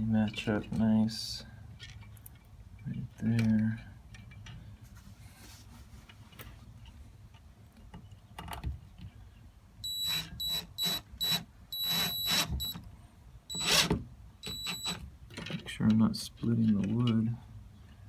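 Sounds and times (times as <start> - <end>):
drill driving screws into wood: 9.9 - 12.8, 13.5 - 15.0.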